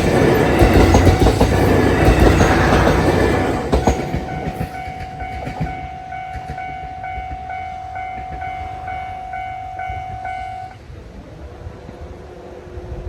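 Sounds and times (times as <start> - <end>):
low rumble of train: 0.0 - 13.0.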